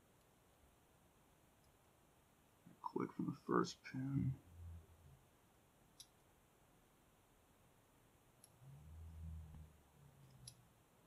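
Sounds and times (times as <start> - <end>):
soft low hum: 0.0 - 11.0.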